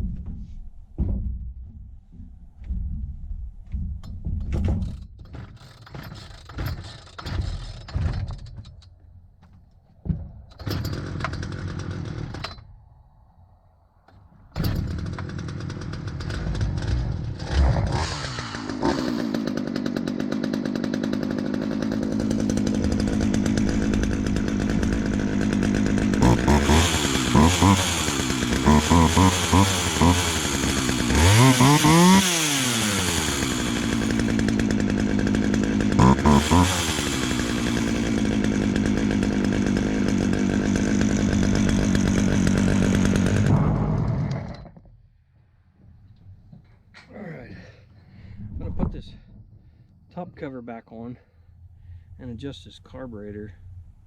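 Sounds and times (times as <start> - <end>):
starter cord pulls: 4.7 - 9.8, 10.5 - 12.6, 14.1 - 44.9
chainsaw engine running: 10.6 - 12.6, 14.6 - 44.9
chainsaw revving: 10.6 - 12.6, 14.6 - 44.9.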